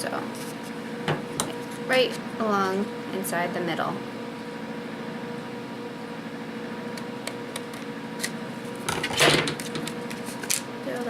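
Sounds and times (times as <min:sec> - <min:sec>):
electrical hum: 0:00.0 - 0:11.0.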